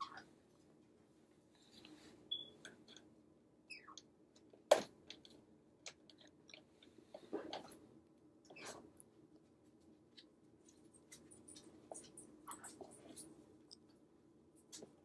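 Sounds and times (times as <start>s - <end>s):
parrot chirps: 3.7s - 4.0s.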